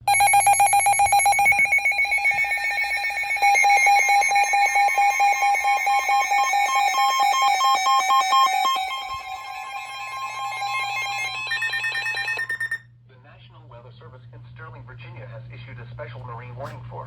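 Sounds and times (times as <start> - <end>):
rapid electronic alert beeping: 0.0 - 12.8
higher electronic tone: 0.1 - 12.8.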